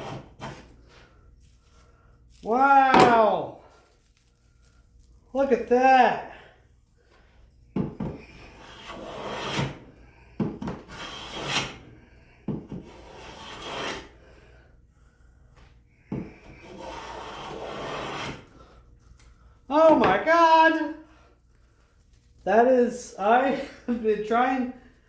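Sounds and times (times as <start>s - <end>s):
hand plane cutting wood: 8.2s - 9.8s, 10.6s - 11.8s, 12.7s - 14.1s, 16.4s - 18.5s.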